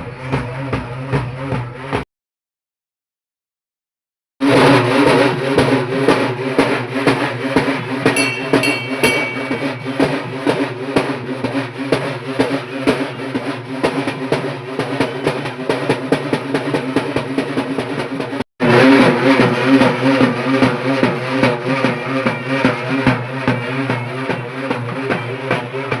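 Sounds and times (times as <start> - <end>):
drums playing fast beats: 0.0 - 2.0, 4.4 - 26.0
high-pitched tone: 8.2 - 10.6.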